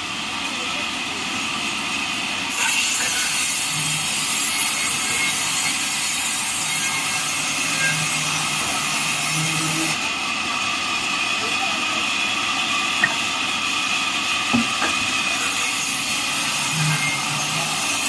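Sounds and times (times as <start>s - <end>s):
band saw cutting wood: 2.5s - 10.1s, 14.5s - 18.0s.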